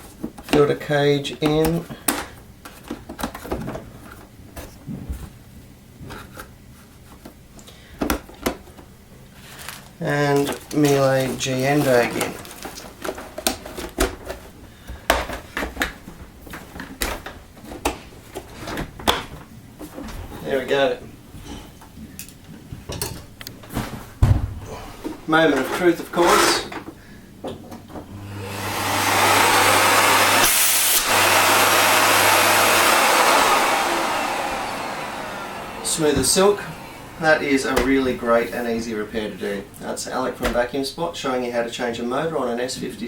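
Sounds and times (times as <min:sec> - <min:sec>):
vacuum cleaner running: 0:28.0 - 0:38.5.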